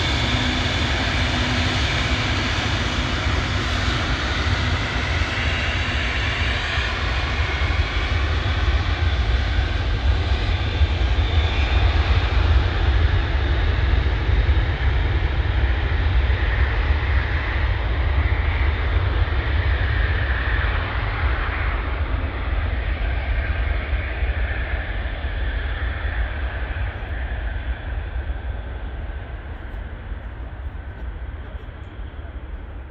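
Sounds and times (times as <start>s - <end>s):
jet engine taking off: 0.0s - 32.9s.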